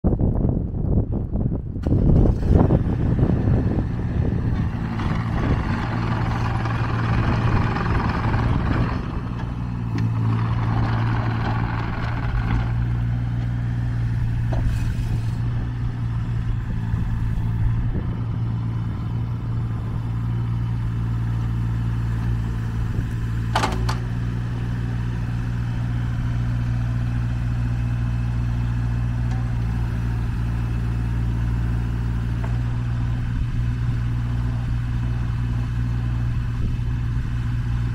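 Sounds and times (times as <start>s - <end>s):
excavator diesel engine running: 0.5s - 37.9s.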